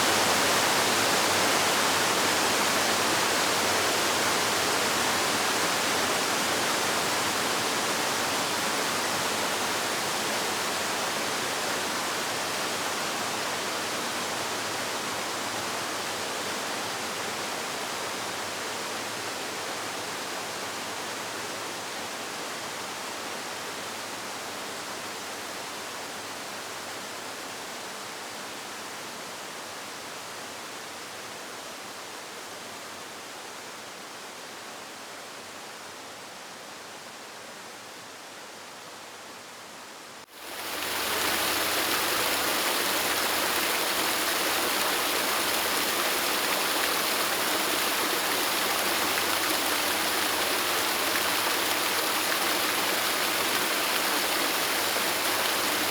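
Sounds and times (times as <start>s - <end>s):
waterfall rushing: 40.4s - 55.9s.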